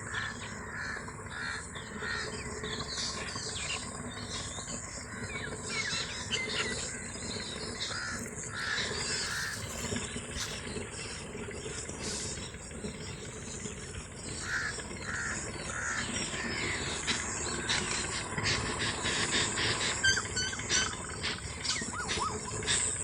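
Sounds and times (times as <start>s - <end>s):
harsh bird calls: 0.0s - 23.0s.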